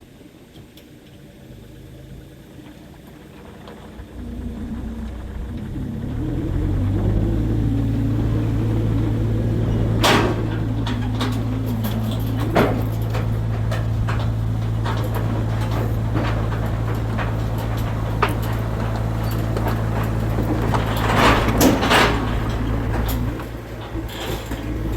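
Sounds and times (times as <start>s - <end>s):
engine running steadily: 0.8s - 24.9s.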